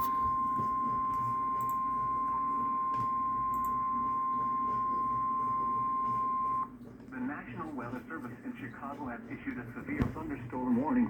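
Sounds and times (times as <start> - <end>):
steady alarm tone: 0.0 - 6.7.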